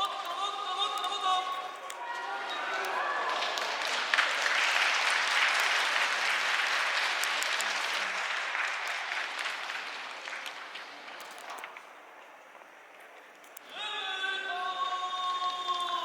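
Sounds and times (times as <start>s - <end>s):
crowd clapping and cheering: 1.9s - 11.8s.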